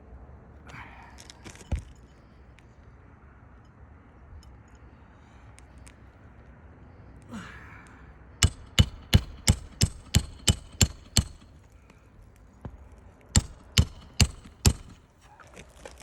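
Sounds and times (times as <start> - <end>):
hammer driving nail into shingle: 8.4 - 11.8, 12.7 - 15.1.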